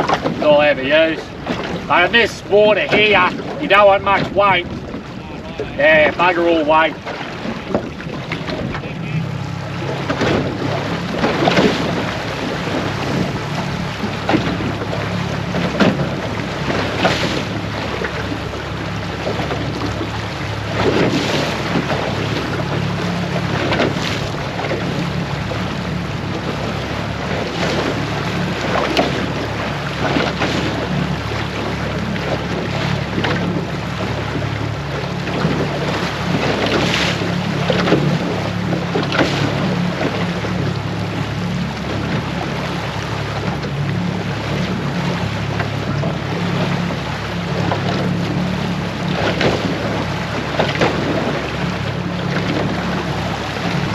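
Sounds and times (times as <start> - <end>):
water splashing: 0.0 - 53.9
waves lapping against boat hull: 0.0 - 53.9
wind buffeting microphone: 0.0 - 53.9.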